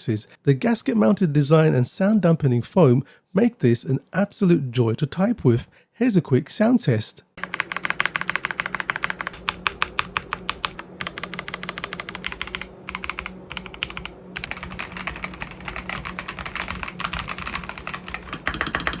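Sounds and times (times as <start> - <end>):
mechanical keyboard keystroke clacks: 7.4 - 19.0.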